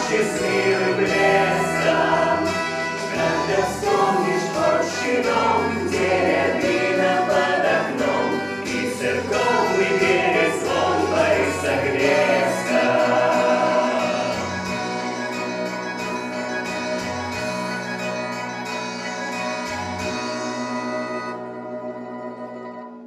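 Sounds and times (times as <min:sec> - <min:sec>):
group of voices singing: 0:00.0 - 0:15.2
instrumental backing: 0:00.0 - 0:23.0.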